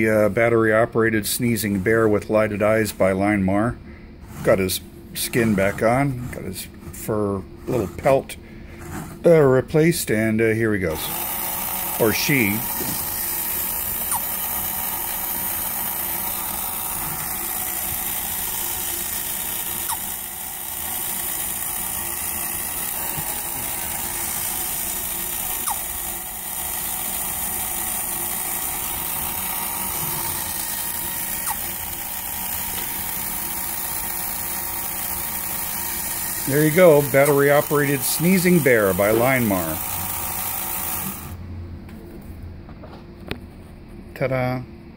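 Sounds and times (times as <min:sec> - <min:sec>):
toy motor whirring: 0:10.9 - 0:41.4.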